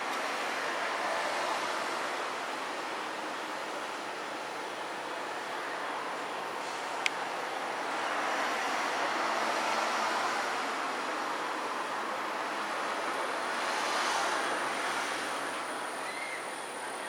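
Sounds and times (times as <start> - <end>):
distant traffic rushing: 0.0 - 17.0.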